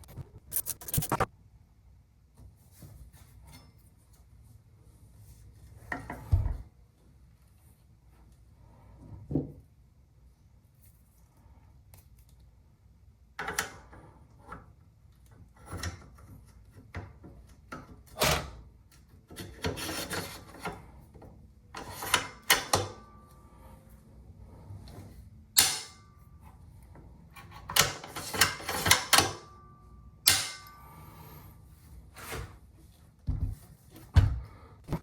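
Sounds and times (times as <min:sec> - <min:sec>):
rubbing and scraping: 0:00.0 - 0:01.3.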